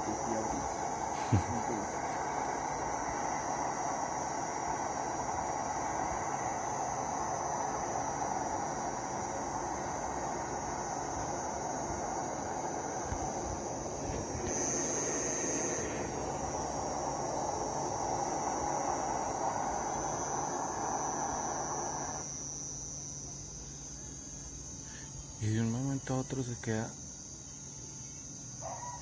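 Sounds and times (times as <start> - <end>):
loud rushing drone: 0.0 - 22.3
crickets chirping: 0.0 - 29.0.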